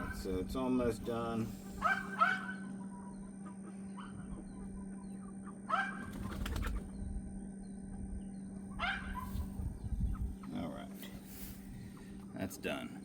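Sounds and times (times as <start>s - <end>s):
chicken wings flapping: 5.9s - 6.9s.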